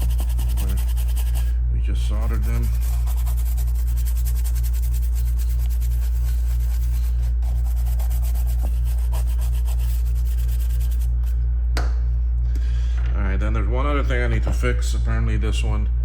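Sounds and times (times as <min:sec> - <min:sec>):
small brush scrubbing: 0:00.0 - 0:11.4
loud electrical hum: 0:00.0 - 0:16.0.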